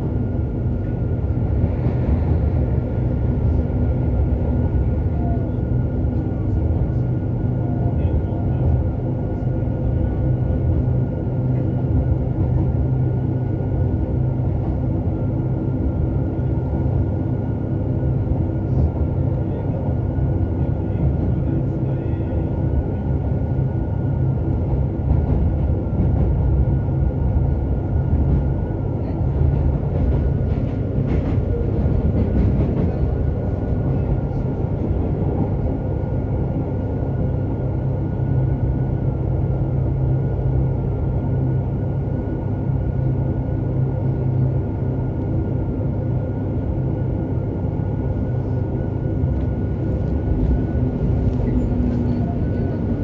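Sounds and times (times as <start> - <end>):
train traction motor roar: 8.5 - 53.0.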